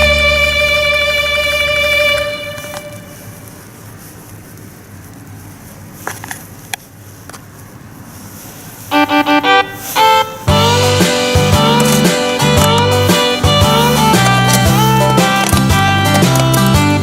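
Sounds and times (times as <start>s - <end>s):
background music: 0.0s - 2.6s, 8.9s - 17.0s
faint hiss: 0.0s - 17.0s.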